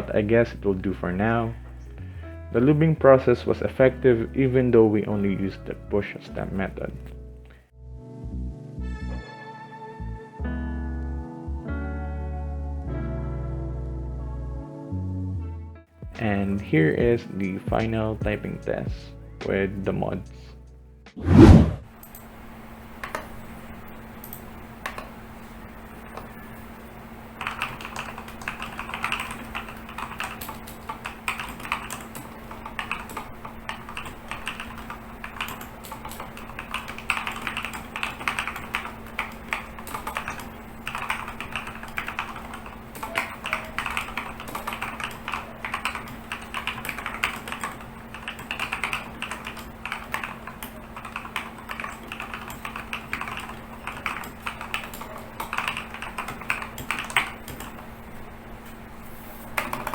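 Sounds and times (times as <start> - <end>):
fast mechanical keyboard typing: 22.0 - 25.3, 25.9 - 57.9, 59.6 - 59.9.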